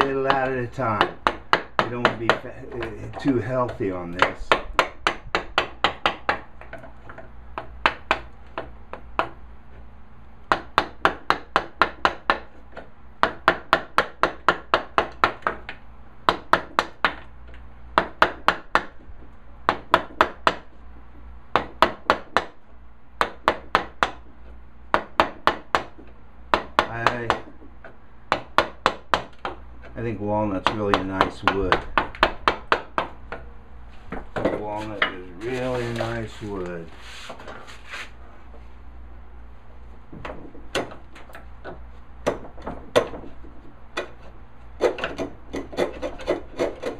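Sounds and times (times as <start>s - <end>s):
mallet striking a chisel: 0.0s - 9.4s, 10.5s - 17.3s, 18.0s - 19.0s, 19.7s - 20.7s, 21.5s - 22.6s, 23.2s - 24.2s, 24.9s - 29.6s, 30.6s - 33.5s, 44.0s - 46.9s.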